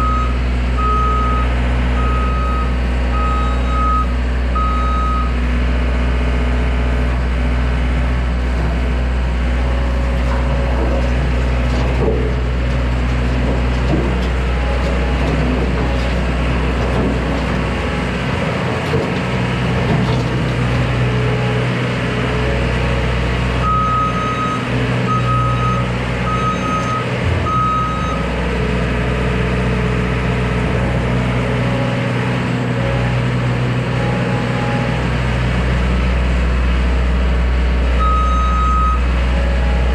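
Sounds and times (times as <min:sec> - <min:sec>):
reversing alarm beeping: 0:00.0 - 0:05.4, 0:23.6 - 0:28.3, 0:38.0 - 0:39.1
skid steer engine running: 0:00.0 - 0:39.9.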